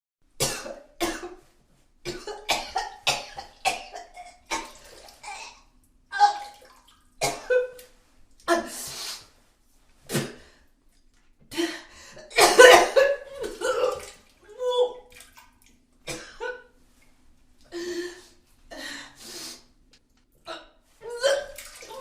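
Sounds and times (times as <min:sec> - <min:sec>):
person retching and vomiting: 0:02.1 - 0:06.6, 0:07.2 - 0:07.8, 0:12.2 - 0:14.2.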